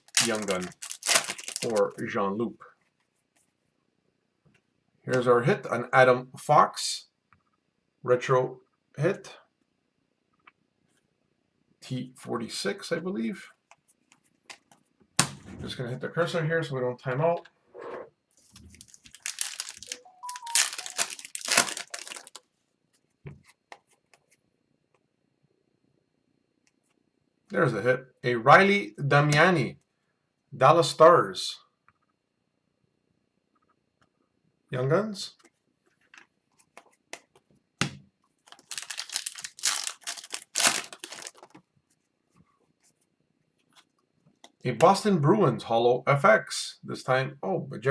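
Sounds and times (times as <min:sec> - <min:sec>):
cards clicking: 0:00.0 - 0:02.0, 0:18.8 - 0:22.4, 0:38.5 - 0:41.6
wrapper tearing and crinkling: 0:00.0 - 0:02.0, 0:18.7 - 0:22.4, 0:38.5 - 0:41.6.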